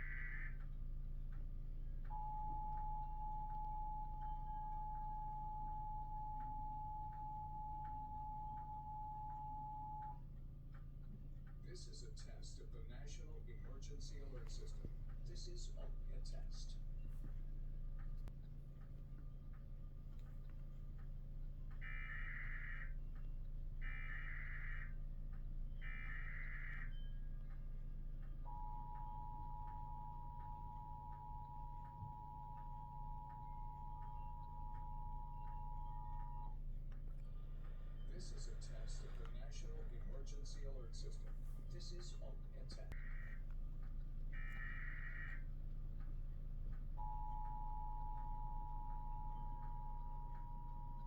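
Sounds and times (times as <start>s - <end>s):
steady low hum: 0.0s - 51.0s
buzzing data tones: 2.1s - 10.2s, 28.3s - 36.8s, 47.0s - 51.0s.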